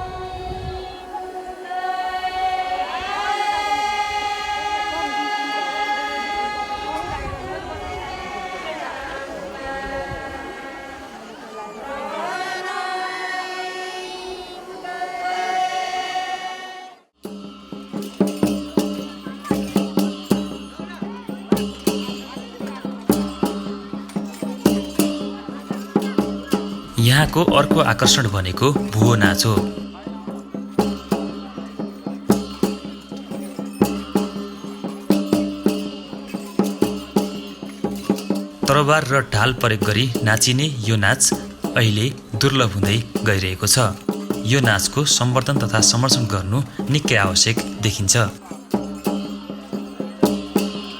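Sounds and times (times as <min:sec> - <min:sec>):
group chanting in unison: 0:00.0 - 0:17.8
drum strokes: 0:17.2 - 0:50.9
rhythmic percussion with rattle: 0:17.2 - 0:50.9.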